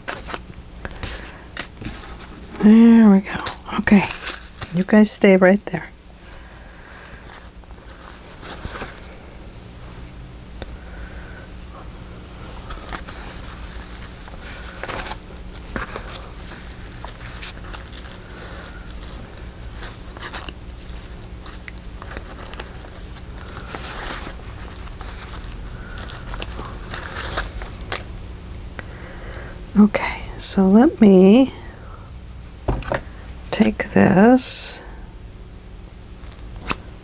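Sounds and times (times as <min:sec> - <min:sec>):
paper rustling and crinkling: 0:00.0 - 0:05.1, 0:06.0 - 0:09.2, 0:12.4 - 0:28.8.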